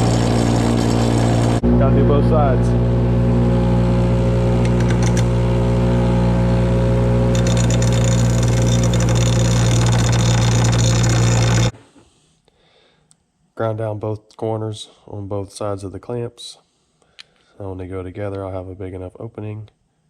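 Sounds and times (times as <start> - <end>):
electric grinder grinding metal: 0.0 - 1.6, 4.6 - 11.8.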